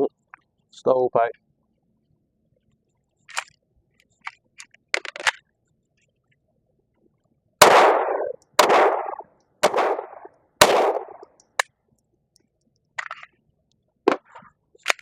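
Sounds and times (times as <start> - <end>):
pistol shots with echo: 7.6 - 11.2.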